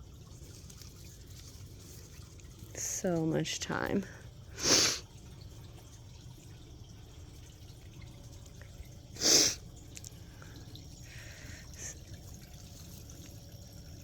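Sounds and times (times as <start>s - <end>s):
faint dripping water: 0.0s - 14.0s
loud breath close to microphone: 4.5s - 5.0s, 9.2s - 9.6s.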